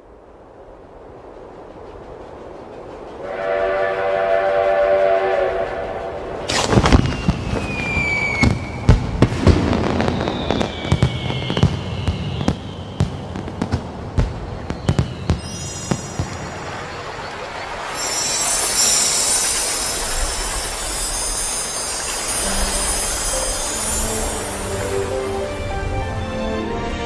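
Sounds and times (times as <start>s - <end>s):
steam train whistle: 3.2s - 6.5s, 17.9s - 26.8s
whistling rockets: 6.4s - 25.9s
firework bangs: 6.5s - 25.2s
fireworks crackling: 6.5s - 26.2s.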